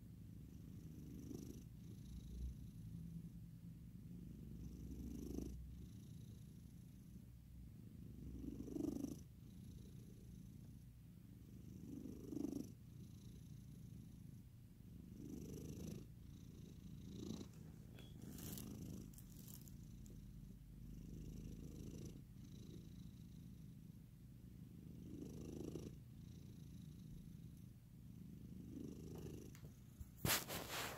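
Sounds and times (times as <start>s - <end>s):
pet snoring softly: 0.5s - 3.0s, 4.2s - 7.2s, 8.1s - 10.8s, 11.5s - 14.4s, 15.0s - 23.9s, 24.7s - 30.9s.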